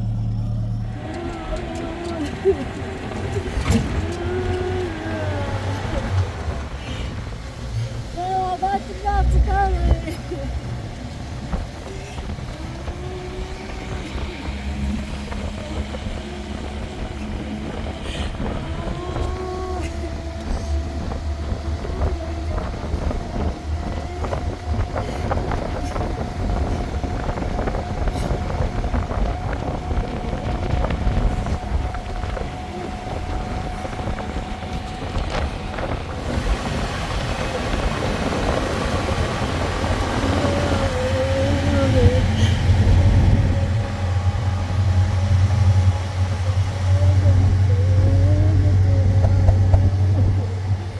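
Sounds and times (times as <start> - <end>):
road noise: 0.0 - 50.9
steady low rumble: 0.0 - 50.9
wavering tone: 12.5 - 50.9.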